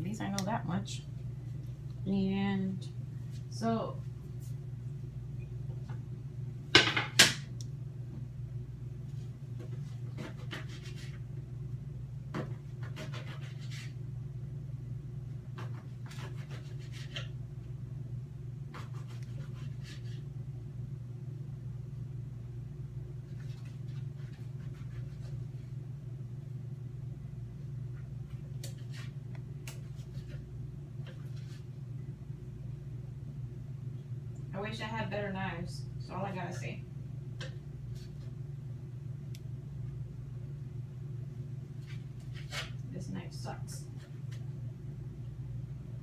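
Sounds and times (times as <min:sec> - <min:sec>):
bread knife sawing bread: 0:10.0 - 0:11.2, 0:12.7 - 0:14.0, 0:15.6 - 0:17.3, 0:18.7 - 0:20.2.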